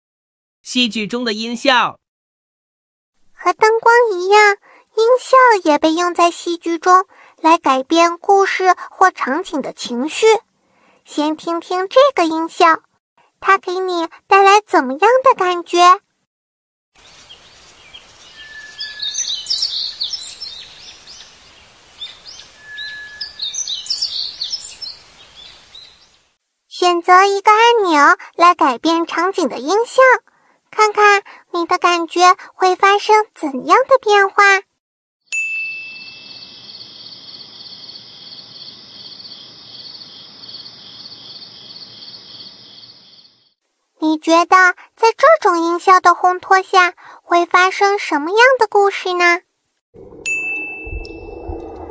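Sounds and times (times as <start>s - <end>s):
birds chirping and twittering: 17.0s - 26.3s, 36.0s - 43.5s
steady outdoor hiss: 17.0s - 28.0s, 35.5s - 44.3s
short whistled note: 22.6s - 23.4s.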